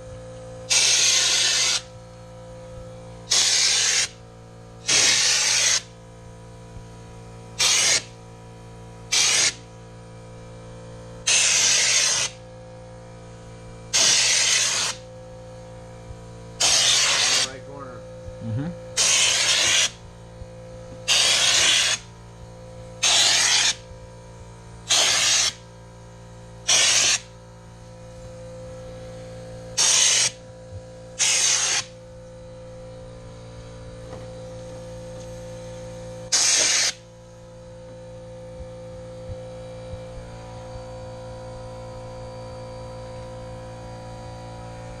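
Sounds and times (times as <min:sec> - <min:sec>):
steady low hum: 0:00.0 - 0:45.0
spray gun hissing bursts: 0:00.7 - 0:01.9, 0:03.3 - 0:04.2, 0:04.9 - 0:05.9, 0:07.6 - 0:08.1, 0:09.1 - 0:09.6, 0:11.3 - 0:12.4, 0:13.9 - 0:15.0, 0:16.6 - 0:17.7, 0:19.0 - 0:20.0, 0:21.1 - 0:22.1, 0:23.0 - 0:23.8, 0:24.9 - 0:25.6, 0:26.7 - 0:27.3, 0:29.8 - 0:30.4, 0:31.2 - 0:32.0, 0:36.3 - 0:37.0.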